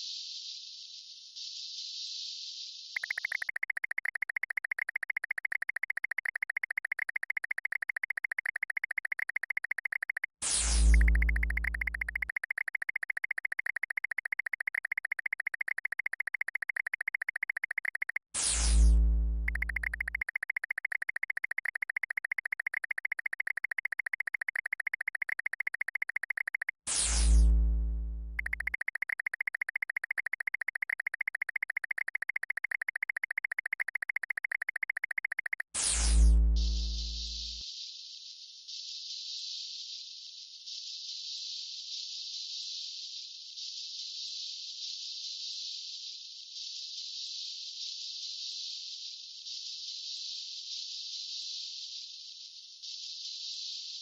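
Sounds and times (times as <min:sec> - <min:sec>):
pulsing electronic chirp: 0:03.0 - 0:37.6.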